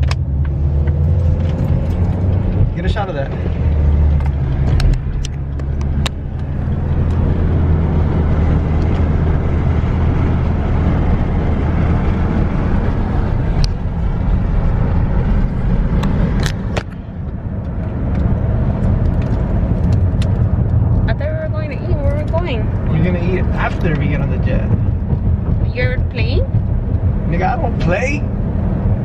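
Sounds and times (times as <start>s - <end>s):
car engine and road noise: 0.0s - 29.0s.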